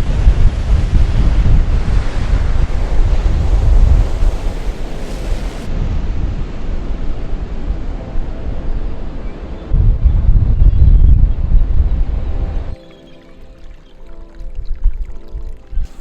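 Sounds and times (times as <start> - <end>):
sea surf breaking on beach: 0.0 - 8.5
wind buffeting microphone: 0.0 - 16.0.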